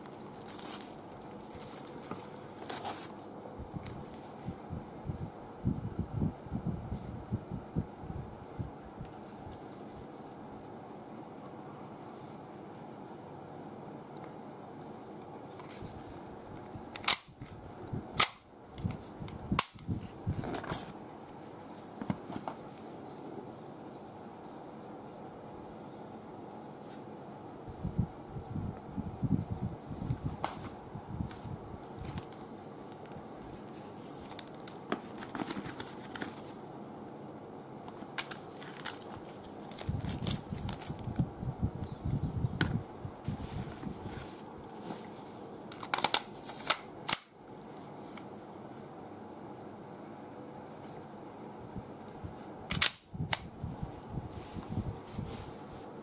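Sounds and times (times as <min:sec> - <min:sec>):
pistol plastic and metal clicks: 0:52.7 - 0:53.4.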